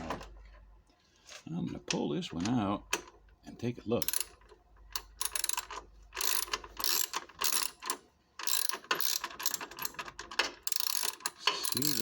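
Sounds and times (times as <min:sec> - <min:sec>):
ratchet wrench clicking: 0:05.2 - 0:10.0, 0:10.6 - 0:12.0.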